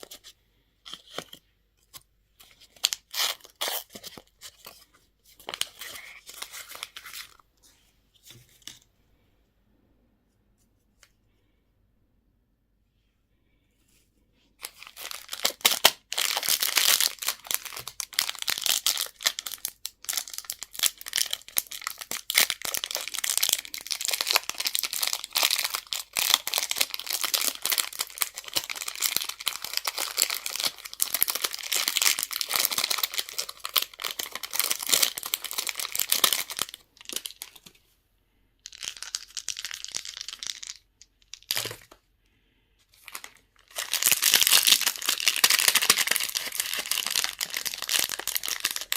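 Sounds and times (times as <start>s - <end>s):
candy wrappers crinkling: 2.4s - 4.8s, 5.4s - 7.4s, 14.6s - 37.7s, 38.6s - 42.0s, 43.0s - 48.9s.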